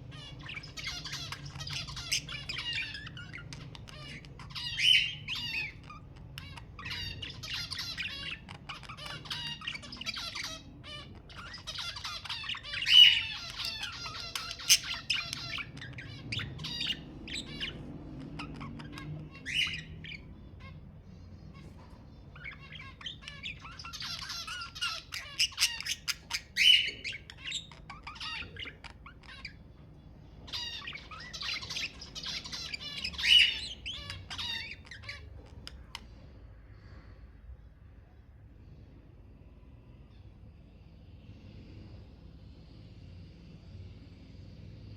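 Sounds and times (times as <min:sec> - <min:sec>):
budgerigars chattering and warbling: 0:00.0 - 0:36.2.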